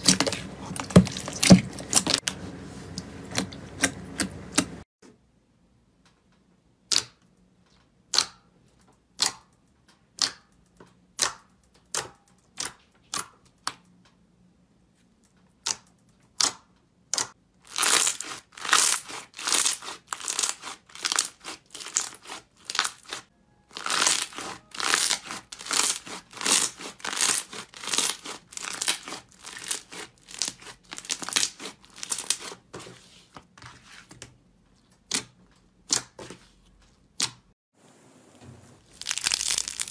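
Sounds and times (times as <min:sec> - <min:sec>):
slime popping and crackling: 0:17.7 - 0:23.2, 0:23.8 - 0:32.5, 0:38.8 - 0:39.9.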